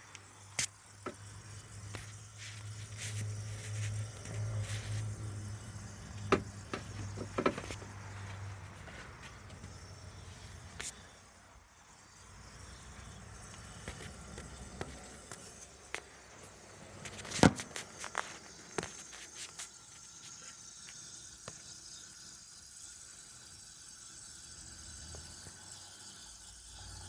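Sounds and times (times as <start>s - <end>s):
car clicking and ticking: 4.0s - 11.0s.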